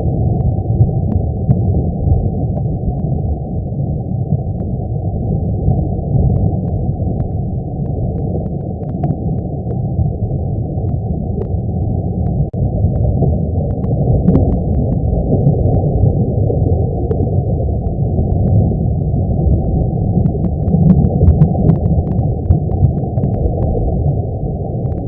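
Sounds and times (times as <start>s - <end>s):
low steady rumbling: 0.0s - 25.0s
faint clicks: 6.2s - 10.2s, 10.8s - 16.1s, 17.0s - 25.0s.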